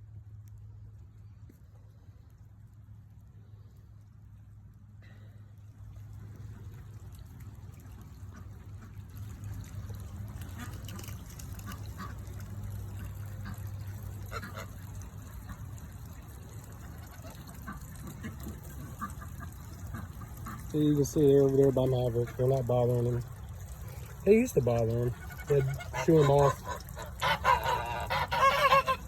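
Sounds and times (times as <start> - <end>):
running water rushing: 5.8 - 29.0
geese honking: 10.4 - 15.8, 16.7 - 29.0.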